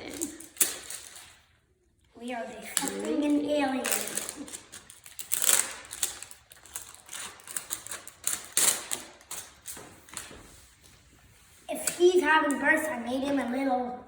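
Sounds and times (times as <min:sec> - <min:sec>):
plastic packaging crinkling: 0:00.0 - 0:01.6, 0:02.5 - 0:10.4.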